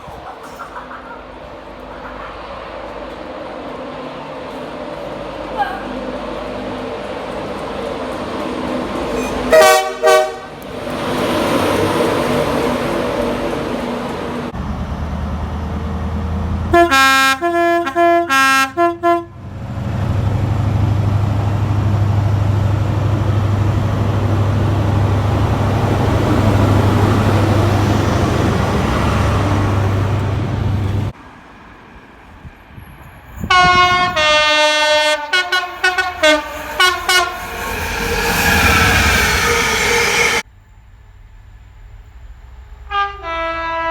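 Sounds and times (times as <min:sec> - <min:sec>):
train engine drone: 0:00.0 - 0:18.6, 0:19.2 - 0:43.9
train running noise: 0:00.0 - 0:18.7, 0:19.3 - 0:40.5
train horn blasts: 0:09.5 - 0:10.6, 0:16.7 - 0:19.4, 0:33.5 - 0:40.4, 0:42.9 - 0:43.9.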